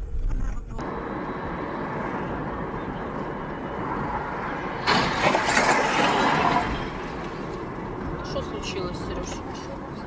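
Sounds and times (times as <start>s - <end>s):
moving car road noise: 0.0s - 10.0s.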